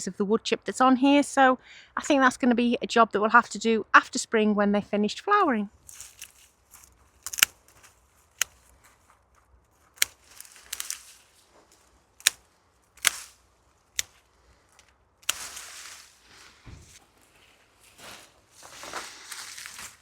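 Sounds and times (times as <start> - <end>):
stems rustling: 5.4 - 20.0
secateurs snipping stems: 5.9 - 8.8, 9.9 - 16.2.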